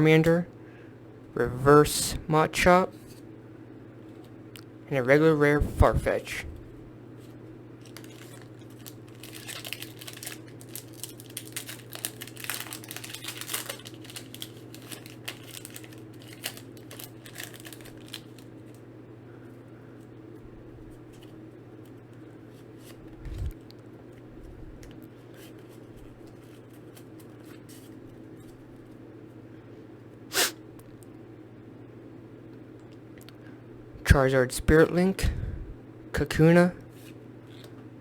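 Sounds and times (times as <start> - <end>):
low steady hum: 0.0 - 38.0
foil wrapper crinkling and tearing: 7.8 - 18.8.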